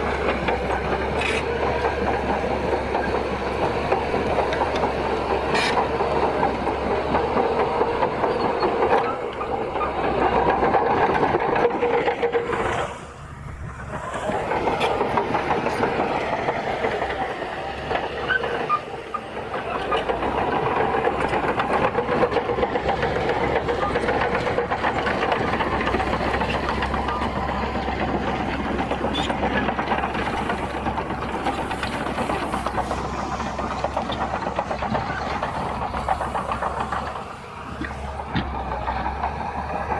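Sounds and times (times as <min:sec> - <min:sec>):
diesel engine under load: 0:00.0 - 0:39.9
steel tracks clattering: 0:00.0 - 0:39.9.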